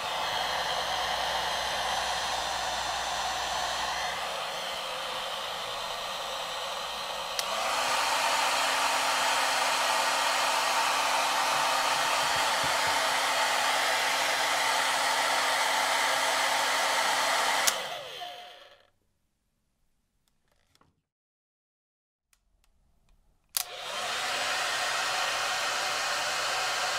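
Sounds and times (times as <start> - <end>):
hair dryer blowing: 0.0 - 18.9, 23.6 - 26.9
hair dryer switch click: 7.2 - 8.0, 10.3 - 14.4, 17.3 - 18.4, 23.5 - 25.6.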